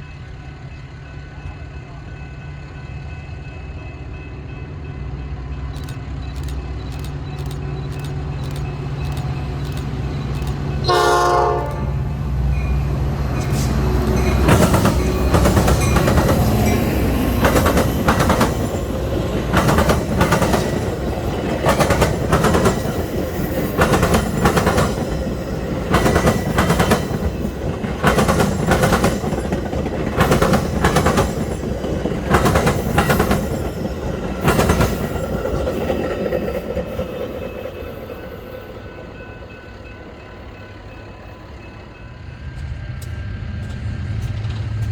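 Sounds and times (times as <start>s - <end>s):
train wheels clicking over rail joints: 5.7s - 12.6s, 13.3s - 38.4s
train horn: 10.8s - 14.1s.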